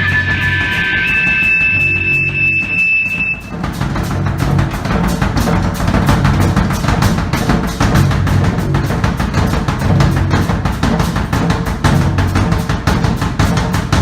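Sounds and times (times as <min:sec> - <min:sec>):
held high tone: 0:00.0 - 0:03.7
bass guitar: 0:00.0 - 0:06.8
drum kit playing: 0:00.0 - 0:14.0.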